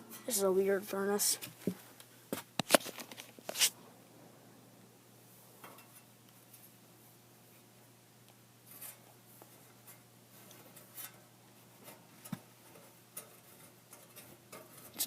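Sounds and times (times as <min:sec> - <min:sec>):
low steady hum: 0:00.0 - 0:15.0
air filter rustling and clicking: 0:01.4 - 0:03.7, 0:08.7 - 0:15.0.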